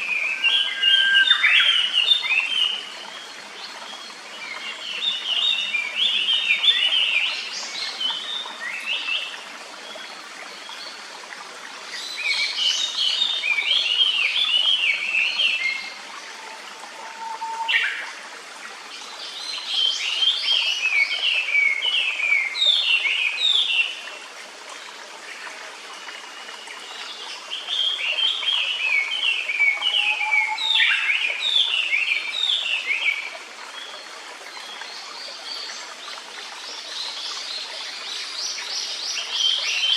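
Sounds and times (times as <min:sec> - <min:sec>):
stream rushing: 0:00.0 - 0:39.9
bird whistling song: 0:17.0 - 0:18.0.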